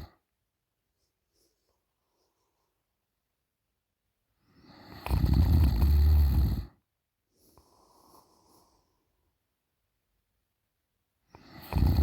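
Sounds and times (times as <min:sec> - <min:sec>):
faint breath: 0:07.3 - 0:09.4.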